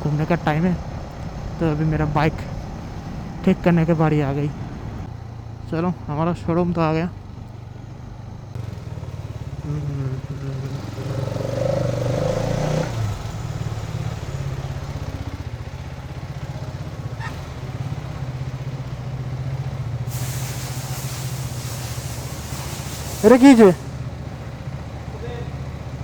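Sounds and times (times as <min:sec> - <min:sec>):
motorcycle engine running: 0:00.0 - 0:26.0
steady hiss: 0:20.1 - 0:23.8.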